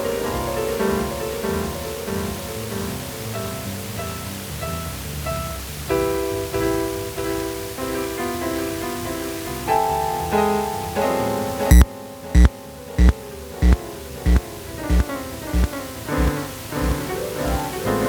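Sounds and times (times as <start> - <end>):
electronic keyboard music: 11.7 - 17.6.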